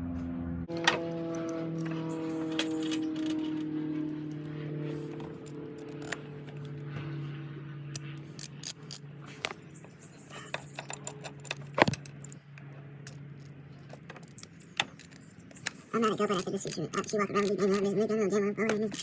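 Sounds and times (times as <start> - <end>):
metal tools clicking and clinking: 1.4 - 3.7, 8.0 - 12.4, 13.1 - 19.0.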